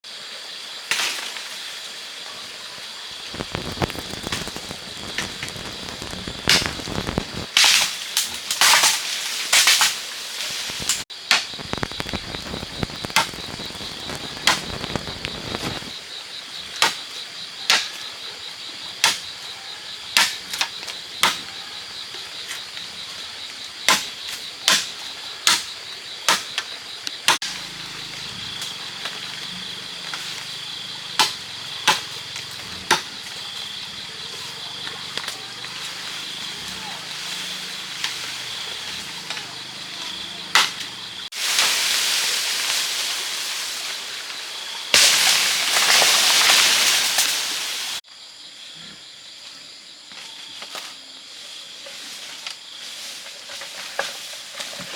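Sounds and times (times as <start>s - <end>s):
high-pitched buzz: 10.6s - 15.9s.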